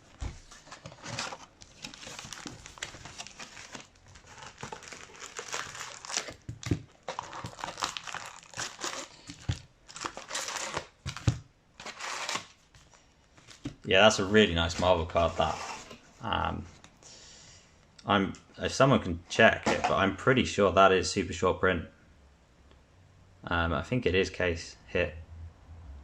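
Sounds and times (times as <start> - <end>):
plastic wrapping crinkling: 0.1 - 15.5.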